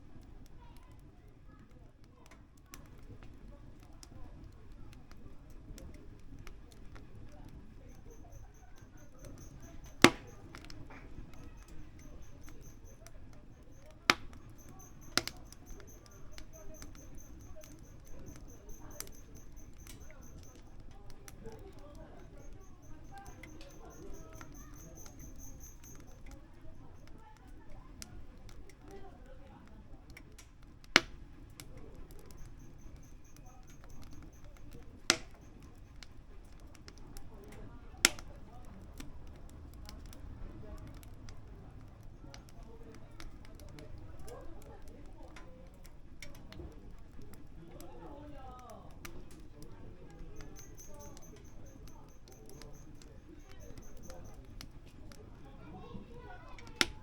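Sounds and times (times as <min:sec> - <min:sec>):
faint high ticking: 0:00.0 - 0:57.0
firewood crackling in stove: 0:00.0 - 0:57.0
wood fire pops: 0:00.0 - 0:57.0.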